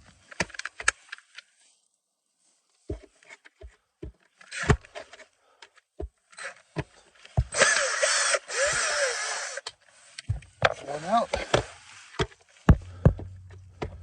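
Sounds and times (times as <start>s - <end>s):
cordless drill running: 7.5s - 9.7s.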